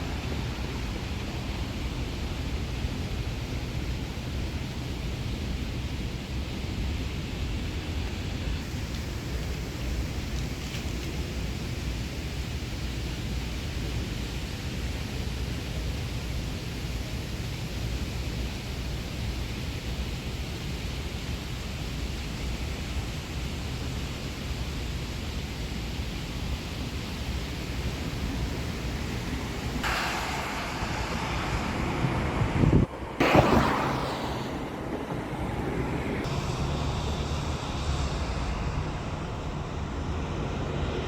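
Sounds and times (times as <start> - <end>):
strong wind buffeting microphone: 26.9 - 36.3.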